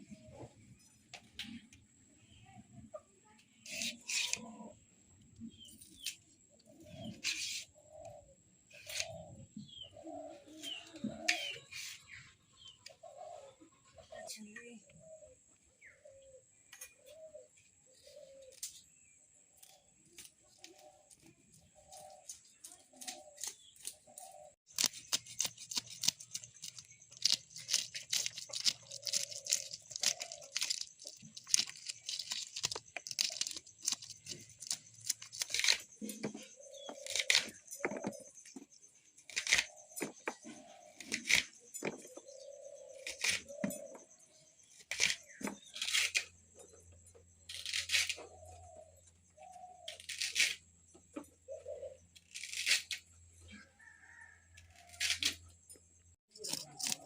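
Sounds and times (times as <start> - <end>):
pigeons cooing: 6.6 - 11.7, 12.9 - 14.3, 15.0 - 18.7, 21.7 - 24.6, 27.2 - 38.4, 39.7 - 44.3, 48.2 - 50.0, 51.2 - 52.1
plant stems snapping: 24.7 - 35.9.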